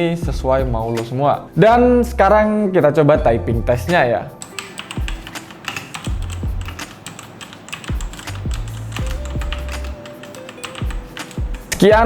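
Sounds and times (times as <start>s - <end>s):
mechanical keyboard typing: 4.4s - 11.9s.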